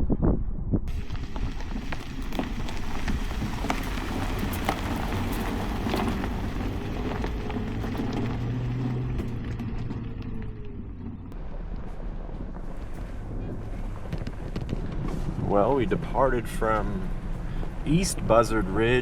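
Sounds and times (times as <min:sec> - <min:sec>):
engine low hum: 0:00.9 - 0:19.0
tyres crunching over gravel: 0:00.9 - 0:19.0.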